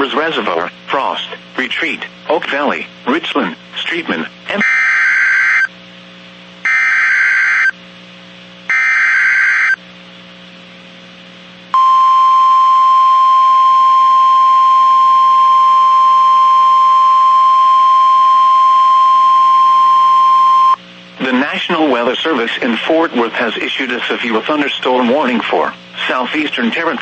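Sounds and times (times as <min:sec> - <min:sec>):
steady alarm tone: 0:04.6 - 0:05.7, 0:06.7 - 0:07.7, 0:08.7 - 0:09.8, 0:11.8 - 0:20.8.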